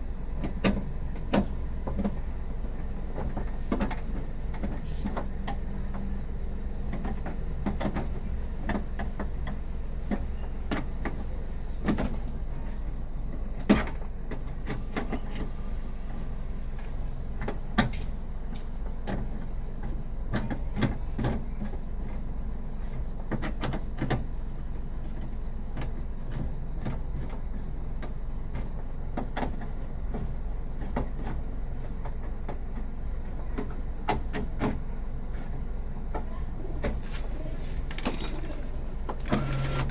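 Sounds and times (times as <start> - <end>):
tools and parts clicking: 37.7 - 39.9.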